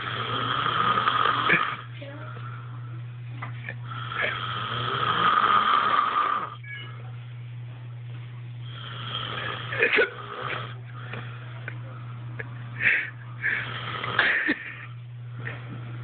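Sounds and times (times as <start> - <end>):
person snoring: 0.0 - 1.9, 3.8 - 6.6, 8.6 - 11.5, 12.8 - 16.0
steady low hum: 0.0 - 16.0.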